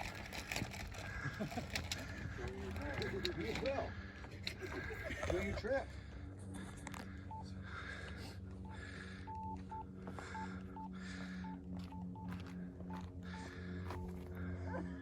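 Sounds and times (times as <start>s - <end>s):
low steady hum: 0.0s - 15.0s
short electronic beeps: 9.3s - 13.6s.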